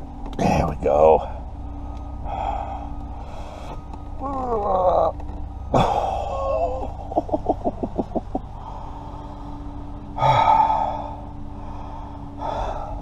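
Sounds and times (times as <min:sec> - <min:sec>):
steady low hum: 0:00.0 - 0:13.0
man groaning: 0:04.2 - 0:05.1, 0:05.7 - 0:07.0.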